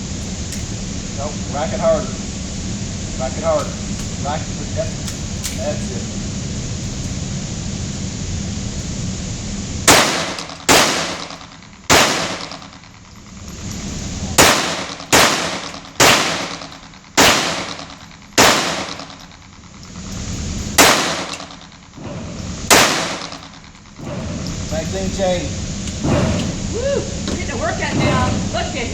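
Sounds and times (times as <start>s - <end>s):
gunshots with echoing tail: 9.9s - 12.6s, 14.4s - 19.2s, 20.8s - 24.5s, 26.0s - 26.7s.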